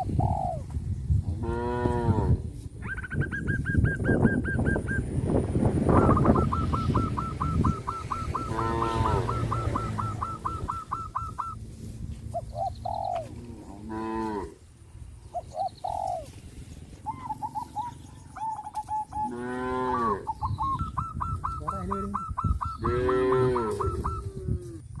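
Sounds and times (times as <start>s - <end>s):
birds chirping: 0.0s - 1.9s, 2.6s - 25.0s
cows mooing: 1.4s - 2.4s, 8.3s - 10.3s, 13.2s - 14.6s, 19.2s - 20.4s, 22.8s - 24.0s.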